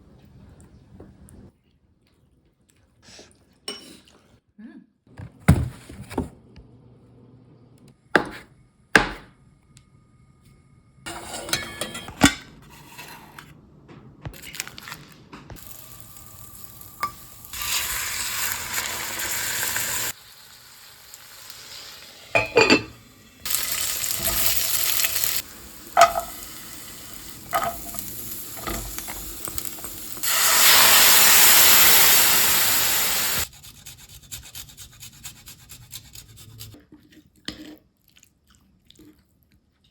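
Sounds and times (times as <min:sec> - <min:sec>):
utensils clinking on cookware: 0:11.1 - 0:13.4, 0:17.0 - 0:17.3, 0:22.3 - 0:23.0, 0:25.9 - 0:26.6, 0:27.4 - 0:30.3
food sizzling in a frying pan: 0:15.6 - 0:33.5.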